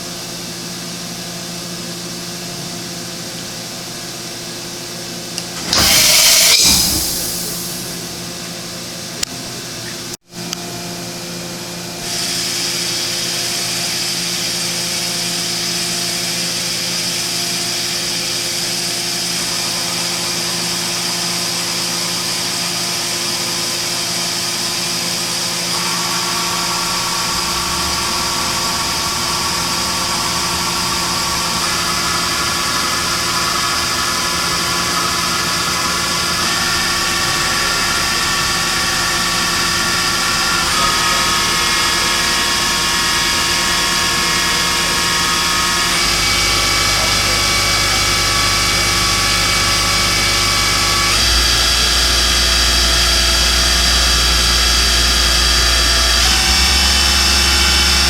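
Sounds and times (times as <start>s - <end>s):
machine whine stepping up: 5.4s - 8.3s, 25.6s - 58.0s.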